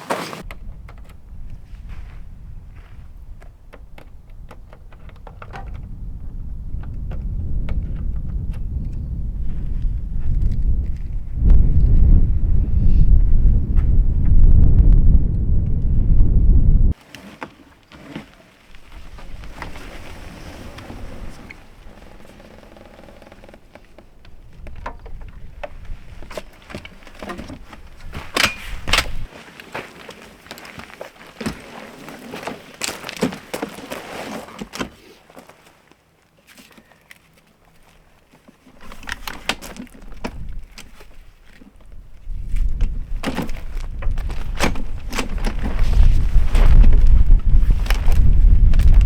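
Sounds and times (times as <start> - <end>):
camping gear clicks and knocks: 0.0 - 11.9, 16.9 - 49.0
wind buffeting microphone: 0.4 - 17.0, 18.8 - 22.3, 24.0 - 29.3, 39.0 - 49.0.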